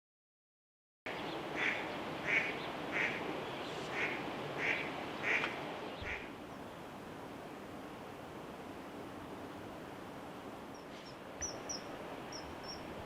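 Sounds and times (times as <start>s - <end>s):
duck quacking: 1.6s - 3.2s, 3.9s - 6.3s.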